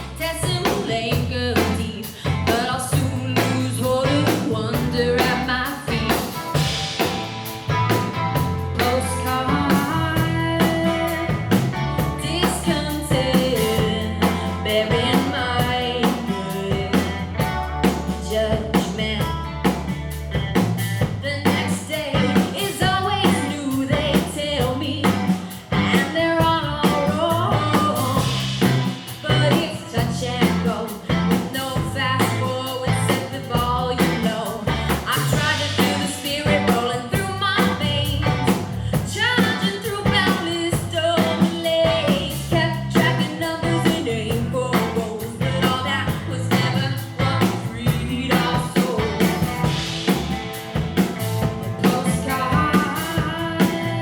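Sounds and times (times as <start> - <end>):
lead vocals singing: 0.0 - 19.5, 21.0 - 50.6, 51.6 - 54.0
bass: 0.0 - 54.0
drum kit beat: 0.0 - 54.0
electric guitar: 0.0 - 54.0.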